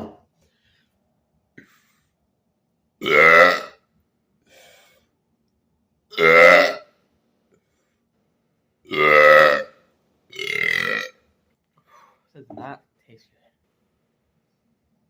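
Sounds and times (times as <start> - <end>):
man belching: 3.0 - 3.8, 6.1 - 6.8, 8.9 - 9.7, 10.3 - 11.2.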